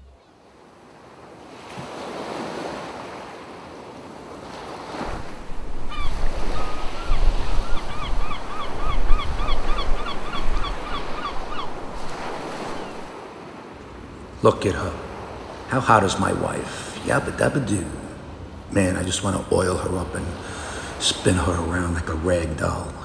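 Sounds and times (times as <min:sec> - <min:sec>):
ocean surf washing in: 0:11.8 - 0:23.0
wind buffeting microphone: 0:13.8 - 0:23.0.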